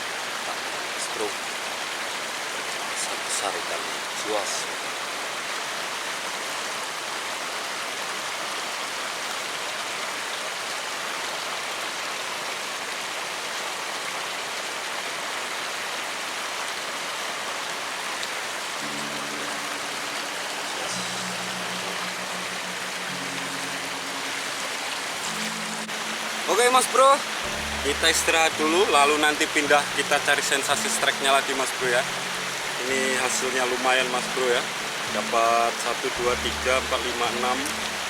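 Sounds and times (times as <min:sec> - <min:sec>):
stream water rushing: 0:00.0 - 0:38.0
low sustained music notes: 0:18.8 - 0:38.0.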